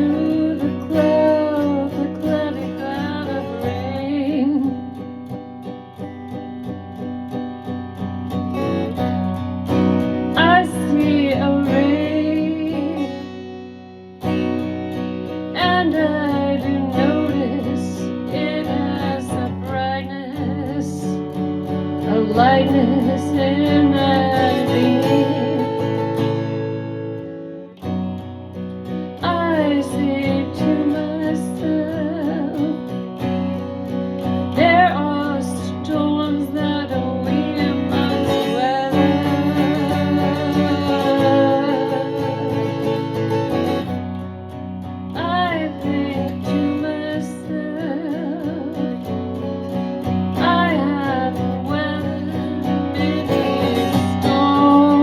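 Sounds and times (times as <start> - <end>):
strummed acoustic guitar: 0.0 - 55.0.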